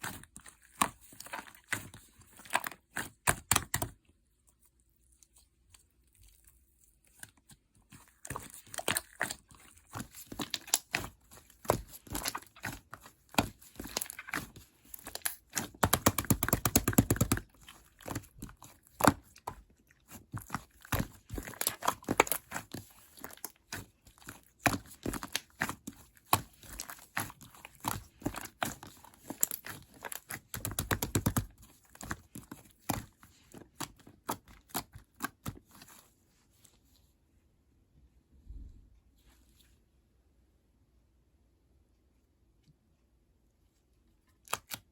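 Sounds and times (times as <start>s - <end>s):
slime kneaded by hand: 0.0s - 37.2s
sticky pops and crackles: 15.2s - 19.5s, 27.8s - 33.1s.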